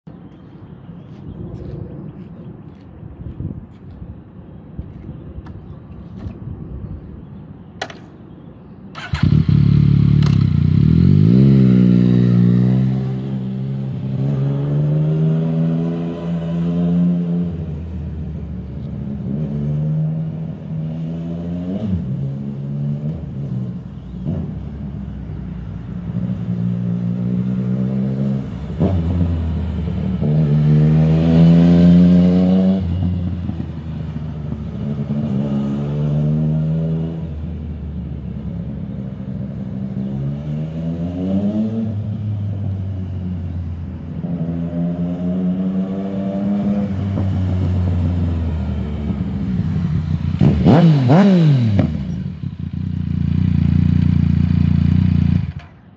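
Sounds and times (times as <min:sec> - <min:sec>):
motorcycle engine revving: 0:09.0 - 0:17.7, 0:26.2 - 0:37.6, 0:44.2 - 0:55.9.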